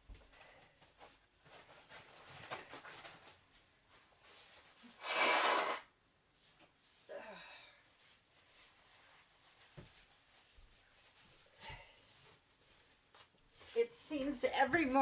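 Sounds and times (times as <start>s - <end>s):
soft snuffly noises: 4.8s - 5.9s
person blowing nose: 4.9s - 5.9s.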